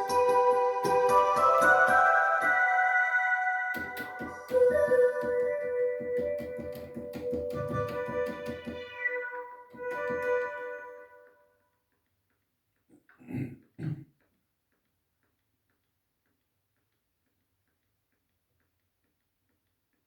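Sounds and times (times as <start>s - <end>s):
electronic keyboard piano notes: 0.0s - 8.9s.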